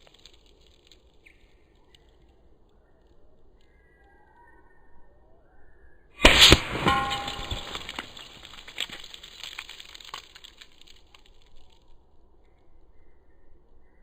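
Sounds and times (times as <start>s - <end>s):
ice breaking and fragments clattering: 0.0s - 1.1s, 6.2s - 11.7s
air rifle shot cracks: 6.2s - 8.1s.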